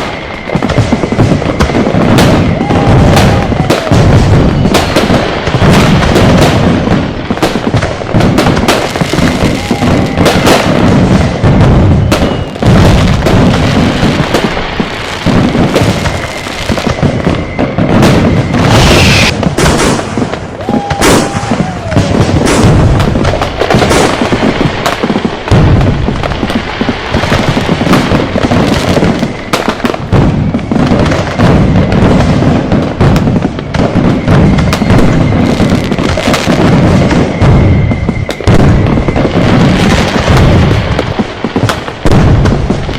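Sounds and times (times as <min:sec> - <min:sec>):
firecrackers and fireworks exploding: 0:00.0 - 0:42.9
whistling tones: 0:12.1 - 0:12.6, 0:16.0 - 0:19.4, 0:37.0 - 0:39.4.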